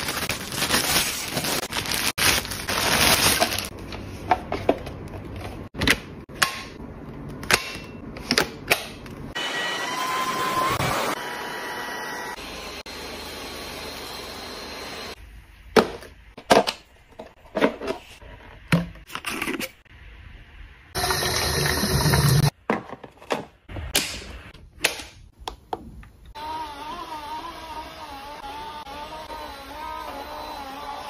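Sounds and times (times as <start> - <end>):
packaging rustling: 0.0 - 4.1.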